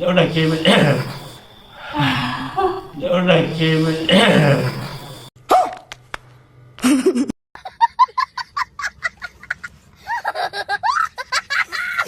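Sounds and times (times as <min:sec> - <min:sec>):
person laughing: 0:01.8 - 0:03.1, 0:04.0 - 0:05.0, 0:06.8 - 0:12.0.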